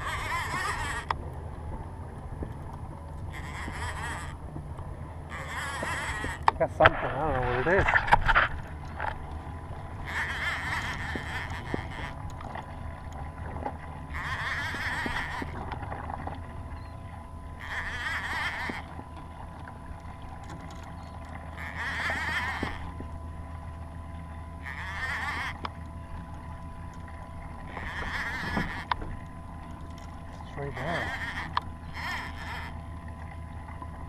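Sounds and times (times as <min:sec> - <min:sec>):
fishing reel buzzing: 0:00.0 - 0:01.2, 0:03.1 - 0:04.5, 0:05.1 - 0:16.0, 0:16.9 - 0:33.1
wind and water rumble: 0:00.0 - 0:34.0.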